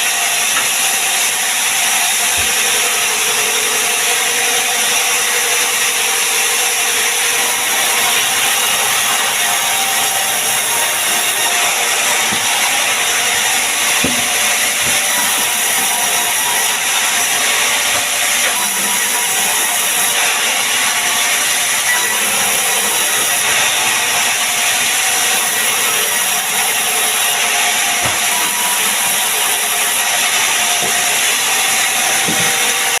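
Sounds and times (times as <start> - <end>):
band saw cutting through log: 0.0 - 33.0.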